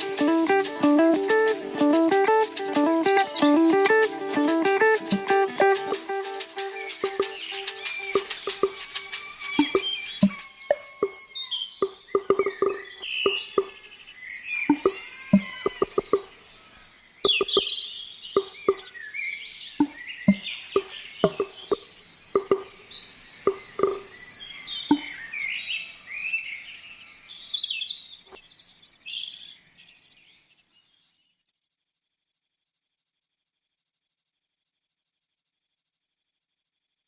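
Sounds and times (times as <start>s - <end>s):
songbirds singing: 0.0s - 5.8s, 6.6s - 31.4s
plucked guitar notes: 0.0s - 8.8s, 9.6s - 10.4s, 11.8s - 13.7s, 14.7s - 16.2s, 21.3s - 21.8s.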